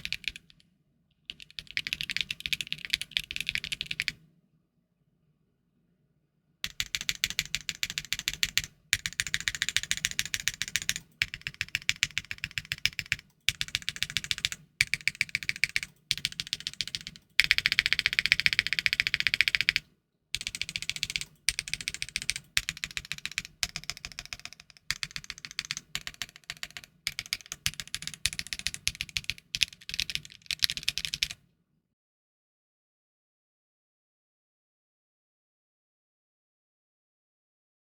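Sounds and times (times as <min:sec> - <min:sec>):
keyboard typing: 0:00.0 - 0:00.6, 0:01.3 - 0:04.2, 0:06.7 - 0:19.8, 0:20.4 - 0:31.4.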